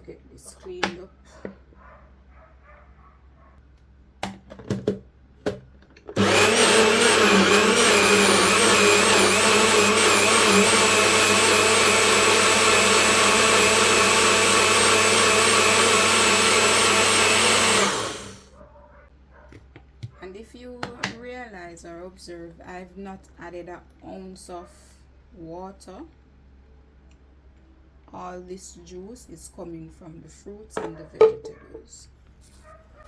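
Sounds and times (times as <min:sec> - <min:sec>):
blender motor running: 0:06.1 - 0:18.4.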